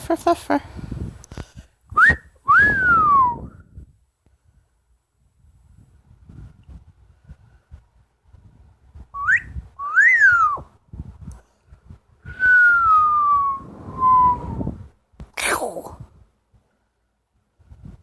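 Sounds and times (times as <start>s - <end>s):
parrot whistling: 9.2s - 10.6s.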